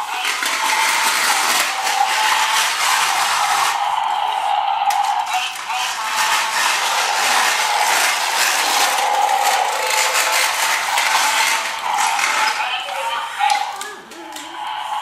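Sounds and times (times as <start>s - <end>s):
toy motor and gears whining: 0.0s - 15.0s.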